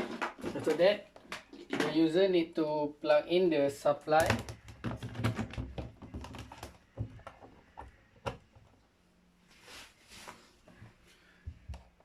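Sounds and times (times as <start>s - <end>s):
soft rustling hisses: 9.4s - 11.2s.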